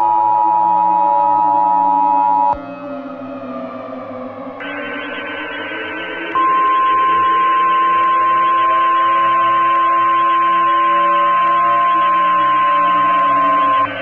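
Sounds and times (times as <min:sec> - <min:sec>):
loud steady alert tone: 0:04.6 - 0:14.0.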